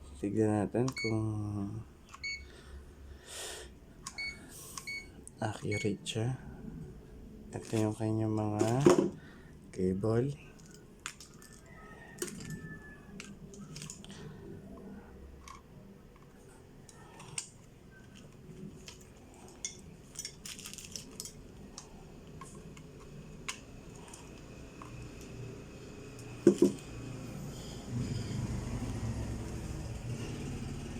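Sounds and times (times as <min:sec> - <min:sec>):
small clicks and taps handling meter: 0:00.9 - 0:01.2.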